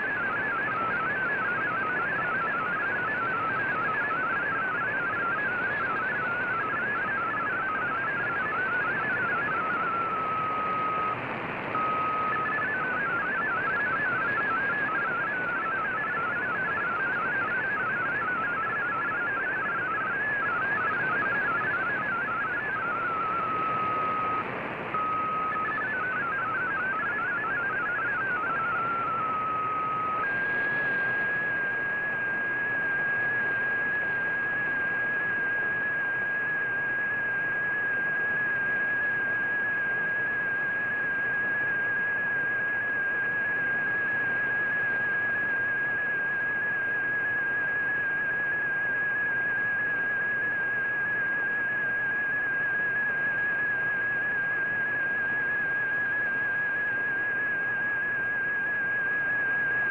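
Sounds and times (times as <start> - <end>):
radio static hiss: 10.6 - 11.8, 23.0 - 25.5.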